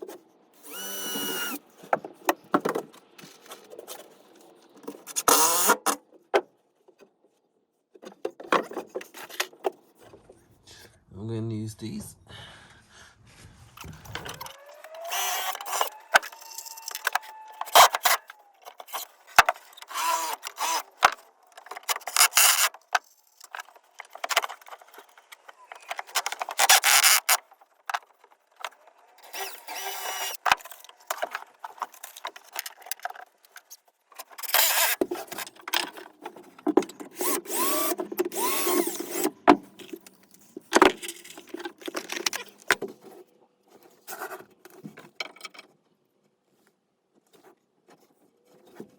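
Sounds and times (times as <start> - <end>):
short squeaks: 13.8 - 20.9.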